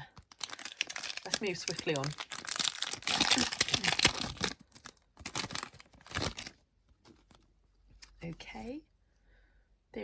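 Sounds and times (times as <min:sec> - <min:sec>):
foil wrapper tearing and crinkling: 0:00.2 - 0:06.6.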